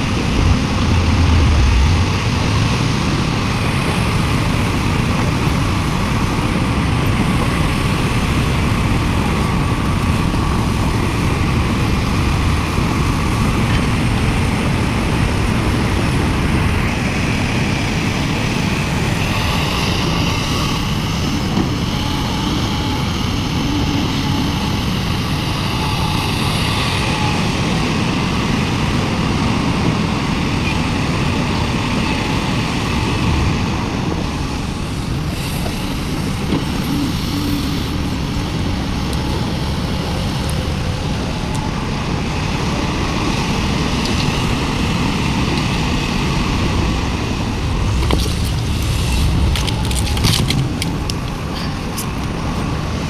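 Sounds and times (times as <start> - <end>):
excavator diesel engine running: 0.0 - 53.0
hydraulic whine: 0.0 - 53.0.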